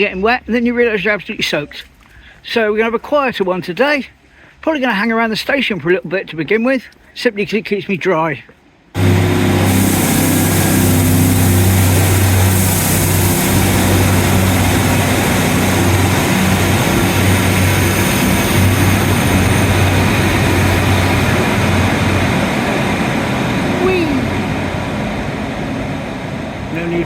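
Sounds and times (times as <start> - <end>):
diesel train engine drone: 9.0 - 27.0
rushing noise: 9.0 - 27.0.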